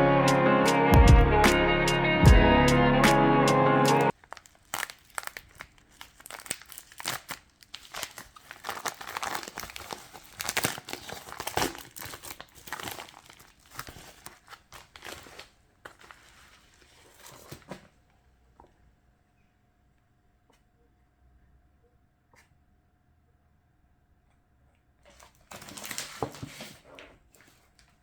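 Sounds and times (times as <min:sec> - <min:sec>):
wrapping crinkling and tearing: 0:04.1 - 0:17.8, 0:25.1 - 0:26.8.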